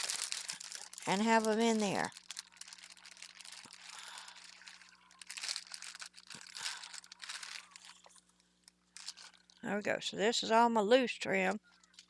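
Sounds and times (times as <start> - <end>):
packaging crinkling and rustling: 0.0 - 9.7.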